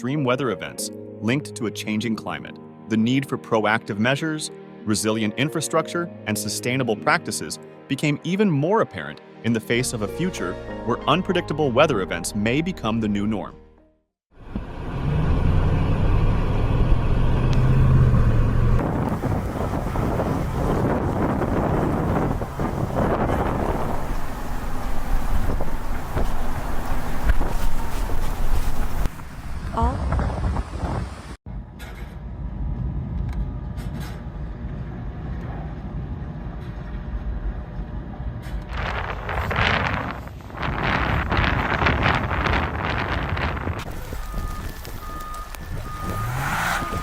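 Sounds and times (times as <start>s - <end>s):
vehicle engine drone: 14.4s - 47.0s
rushing noise: 32.2s - 47.0s.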